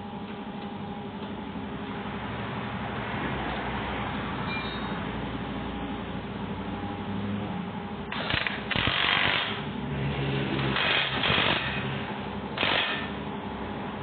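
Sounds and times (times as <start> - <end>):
power tool rattling bursts: 8.1 - 9.6, 10.7 - 11.9, 12.6 - 13.1.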